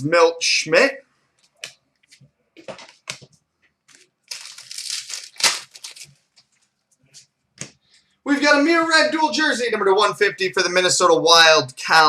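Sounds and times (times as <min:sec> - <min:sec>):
cards and wrapper rustling: 0:03.9 - 0:06.7
wrapper crinkling: 0:03.9 - 0:06.7.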